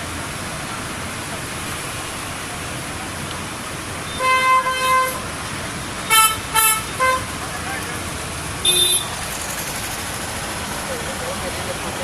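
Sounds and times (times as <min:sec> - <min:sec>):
vehicle horns honking: 0:04.1 - 0:05.3, 0:06.0 - 0:07.4, 0:08.6 - 0:09.2.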